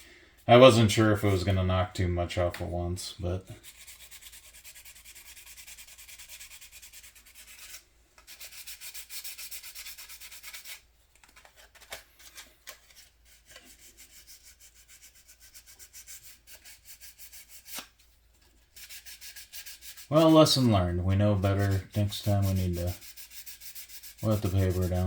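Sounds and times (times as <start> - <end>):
sandpaper rubbing on putty: 3.6 - 10.8, 13.2 - 18.0, 18.7 - 25.0.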